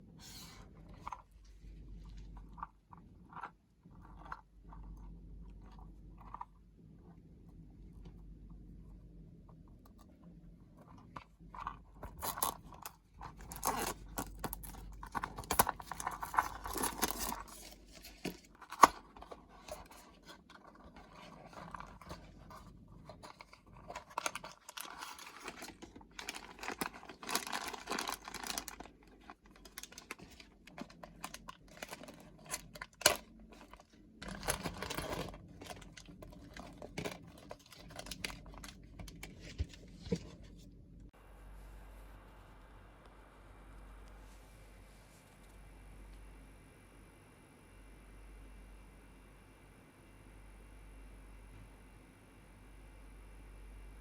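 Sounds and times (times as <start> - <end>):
packaging rustling and tearing: 12.1 - 40.3.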